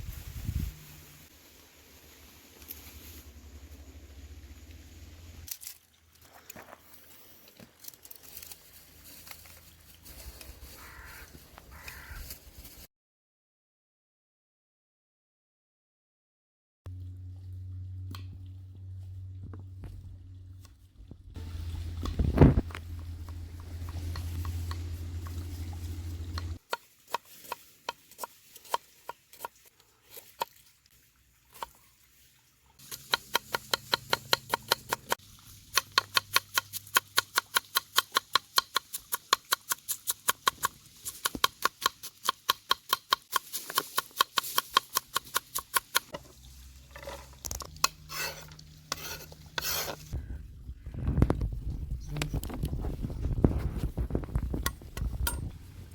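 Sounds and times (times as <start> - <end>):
low hum: 0.0 - 5.5, 16.9 - 26.6, 46.1 - 55.9.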